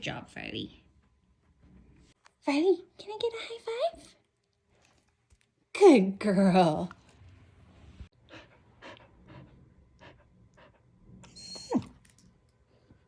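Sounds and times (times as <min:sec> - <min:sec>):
dog panting: 0:08.2 - 0:11.1.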